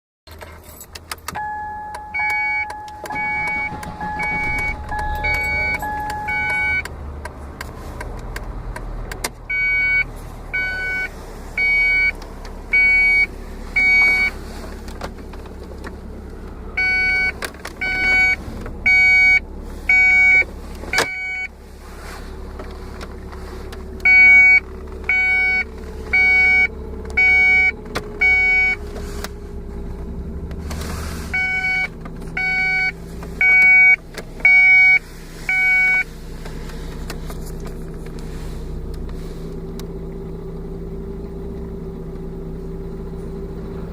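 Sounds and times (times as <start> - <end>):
electronic beeping: 1.4 - 6.8
low rumble: 2.5 - 7.6.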